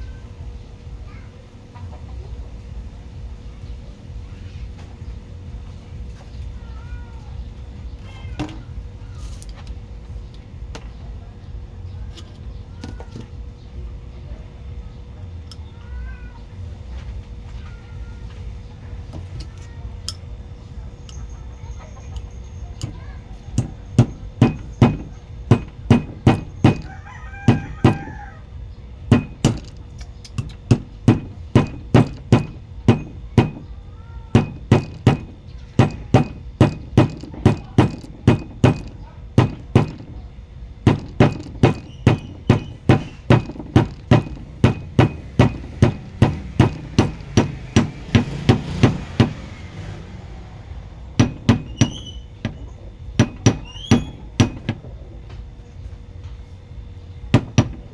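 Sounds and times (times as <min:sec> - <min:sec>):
sharp hammering knocks: 0:22.8 - 0:28.4, 0:29.1 - 0:55.1, 0:57.3 - 0:57.9.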